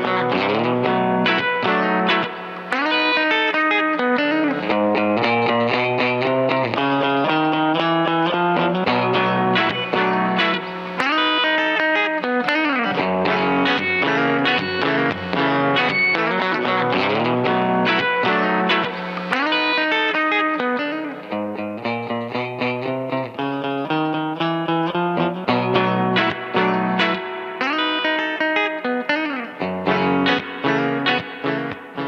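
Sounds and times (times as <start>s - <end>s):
electric guitar country picking: 0.0s - 32.0s.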